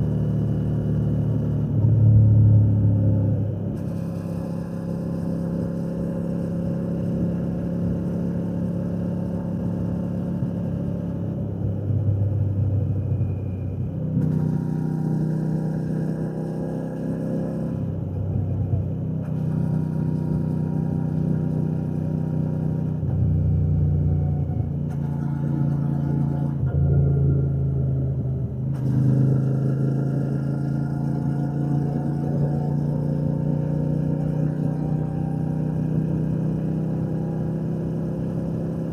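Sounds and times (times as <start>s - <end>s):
motorcycle engine and exhaust: 0.0s - 38.9s.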